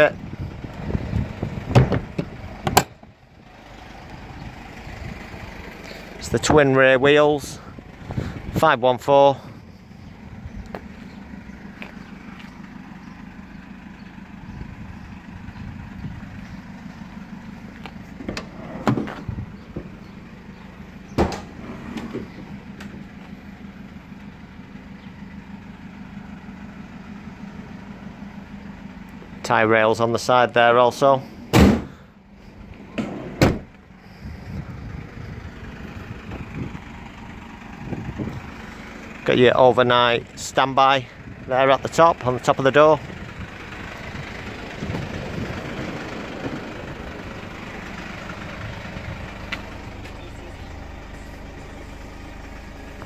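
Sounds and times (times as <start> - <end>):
diesel engine idling: 0.0 - 53.0
steady low rumble: 0.0 - 53.0
van door slamming: 1.6 - 3.0, 18.2 - 20.0, 21.1 - 23.0, 31.5 - 32.0, 32.9 - 33.7
sharp clunks: 21.2 - 23.0, 31.5 - 32.0.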